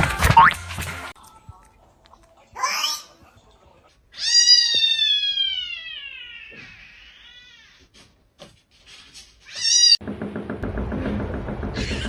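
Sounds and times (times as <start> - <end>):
cat meowing: 4.2 - 7.9.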